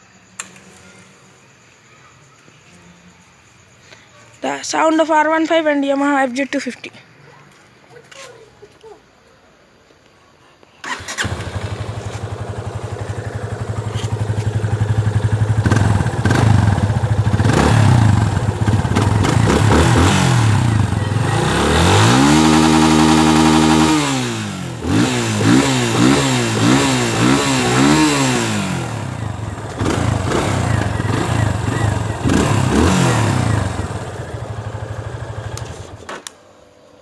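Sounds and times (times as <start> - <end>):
motorcycle engine idling: 10.8 - 36.1
motorcycle engine revving: 10.8 - 36.1
motorcycle engine starting: 10.8 - 36.3.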